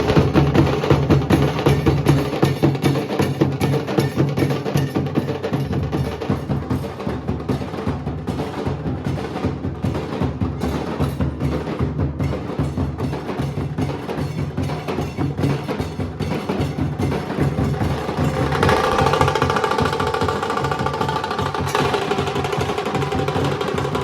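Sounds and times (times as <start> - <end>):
dhol drumming: 0.0 - 24.0.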